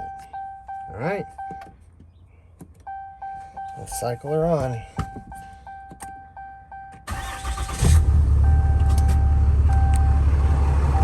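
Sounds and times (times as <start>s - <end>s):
diesel engine idling: 6.7s - 11.0s.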